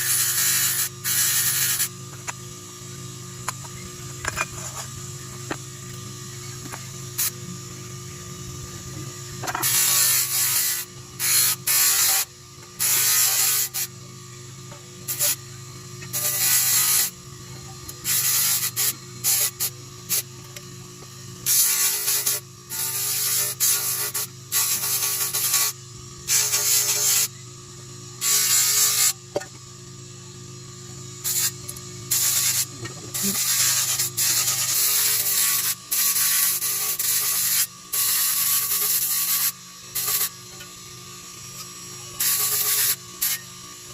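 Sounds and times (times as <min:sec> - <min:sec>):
steady low hum: 0:00.0 - 0:43.9
sanding on metal: 0:16.1 - 0:17.1, 0:21.5 - 0:27.3, 0:31.2 - 0:40.4, 0:42.2 - 0:43.4.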